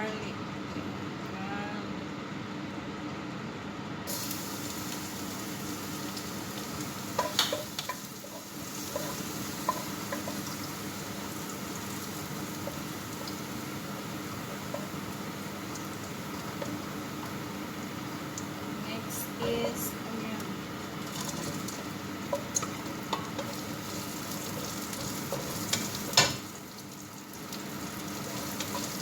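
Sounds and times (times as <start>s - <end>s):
garlic sizzling in hot oil: 4.1s - 18.8s, 20.6s - 29.0s.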